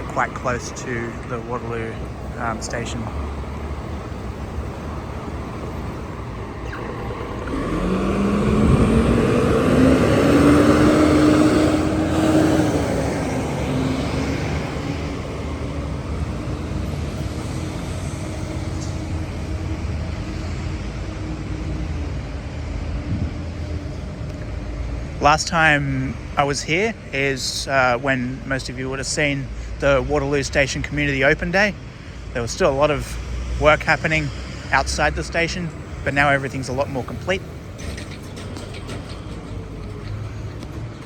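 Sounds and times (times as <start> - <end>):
road traffic rumbling: 0.0 - 41.0
vehicle accelerating past: 3.0 - 20.8.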